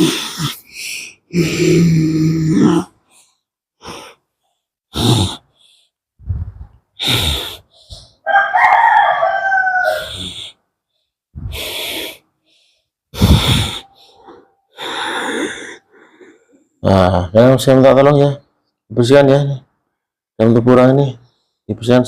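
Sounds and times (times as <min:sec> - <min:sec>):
person huffing: 0:00.0 - 0:04.2, 0:04.9 - 0:08.2, 0:11.4 - 0:16.7
rooster crowing: 0:08.2 - 0:10.4.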